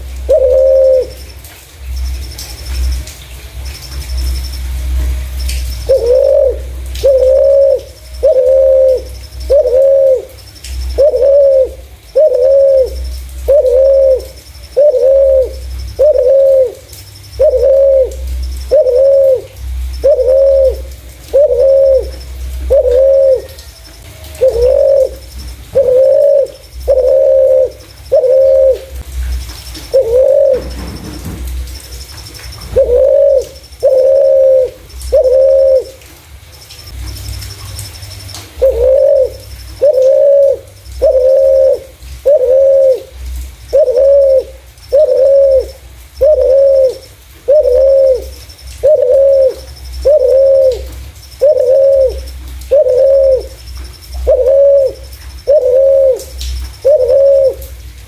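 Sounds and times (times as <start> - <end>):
dove cooing: 0.0 - 1.3, 4.2 - 36.1, 37.7 - 58.0.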